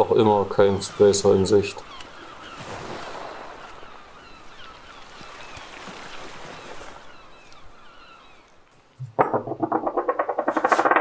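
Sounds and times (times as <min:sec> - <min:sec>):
rushing water or waves: 0:00.0 - 0:08.7.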